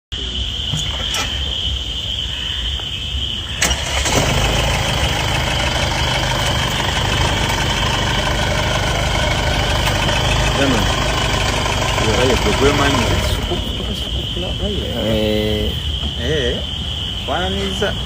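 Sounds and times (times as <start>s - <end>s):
car engine starting and idling: 3.5s - 16.0s.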